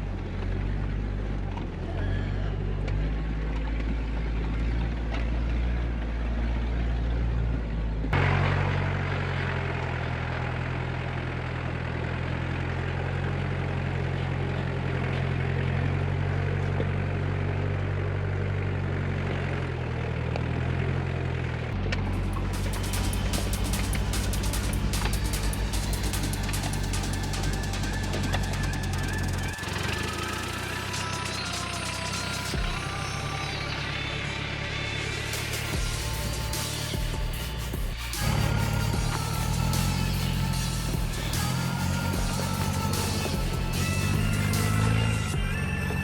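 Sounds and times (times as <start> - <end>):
road and tyre noise: 0.0 - 46.0
vehicle engine running: 0.0 - 46.0
music with a fast beat: 22.0 - 46.0.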